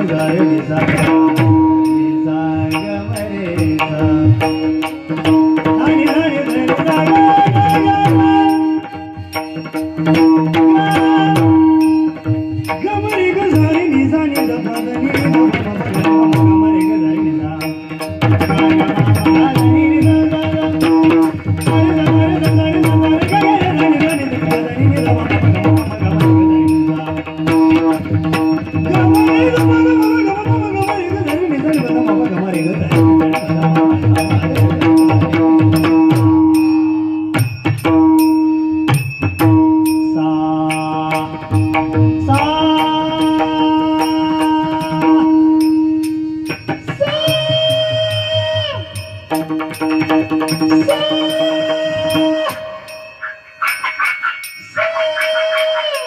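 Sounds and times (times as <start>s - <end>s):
hand drum: 0.0s - 53.0s
tabla strokes: 0.0s - 56.0s
melody line: 48.4s - 56.0s.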